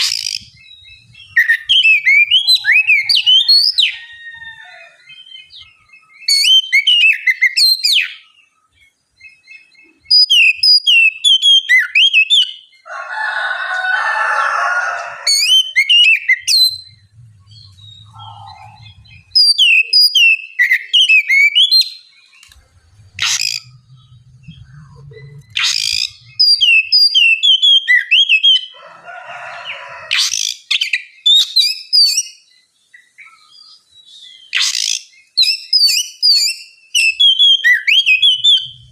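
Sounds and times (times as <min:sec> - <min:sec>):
bird harsh raspy chatter: 0:00.0 - 0:05.6, 0:12.9 - 0:20.4, 0:22.4 - 0:27.7
bird whistling song: 0:00.0 - 0:12.8, 0:15.3 - 0:28.8, 0:29.6 - 0:38.9.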